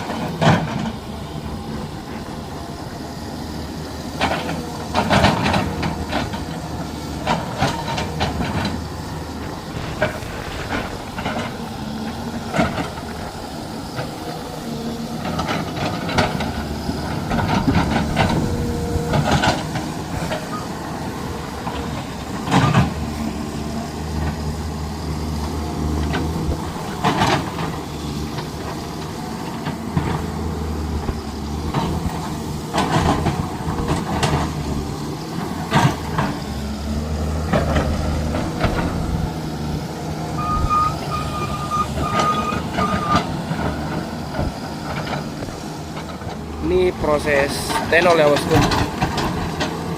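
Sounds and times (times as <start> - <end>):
diesel engines rumbling: 0.0 - 49.9
hisses: 8.9 - 15.1.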